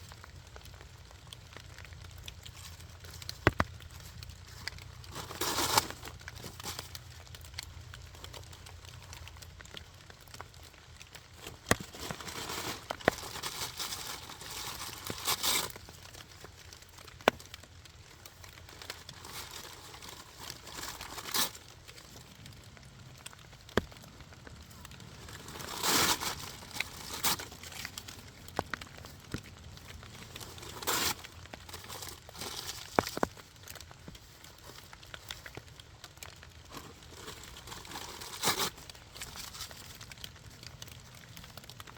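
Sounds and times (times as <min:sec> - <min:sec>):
fire popping: 0:00.0 - 0:41.9
wood fire crackling: 0:00.0 - 0:41.9.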